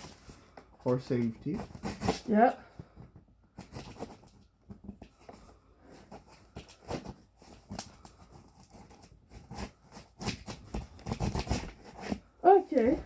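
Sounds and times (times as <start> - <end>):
cardboard rustling: 0.0 - 13.0
knife slitting packing tape: 9.4 - 12.2.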